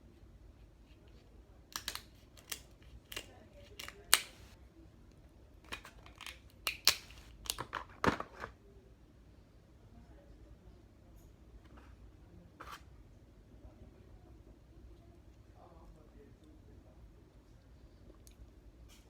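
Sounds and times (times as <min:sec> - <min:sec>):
crab shells cracking: 0:01.7 - 0:04.4, 0:05.7 - 0:07.7.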